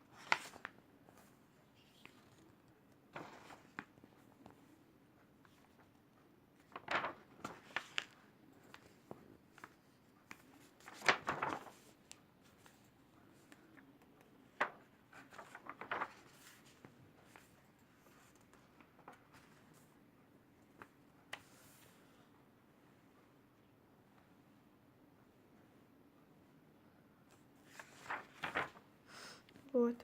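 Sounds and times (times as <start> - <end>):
paper pages rustling and flapping: 0.1 - 4.8, 5.4 - 20.0, 27.3 - 28.9.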